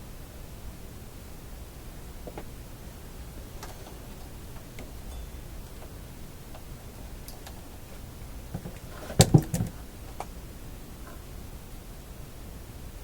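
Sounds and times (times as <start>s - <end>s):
faint steady hiss: 0.0s - 13.0s
components clacking on workbench: 8.6s - 10.3s.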